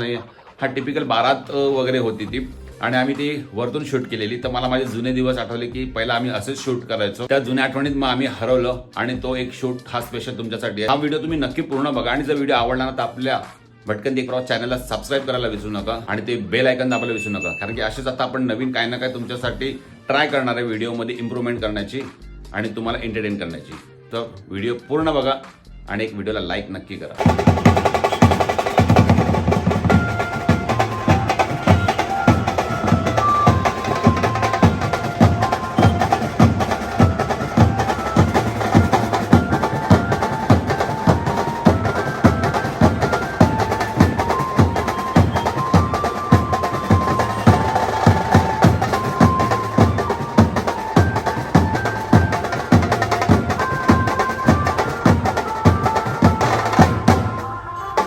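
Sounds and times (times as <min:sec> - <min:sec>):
drums and percussion beat: 0:00.0 - 0:03.4, 0:04.1 - 0:06.4, 0:07.4 - 0:09.6, 0:10.9 - 0:13.6, 0:16.8 - 0:18.2, 0:19.4 - 0:23.9, 0:27.2 - 0:58.0
banjo melody: 0:27.2 - 0:58.0.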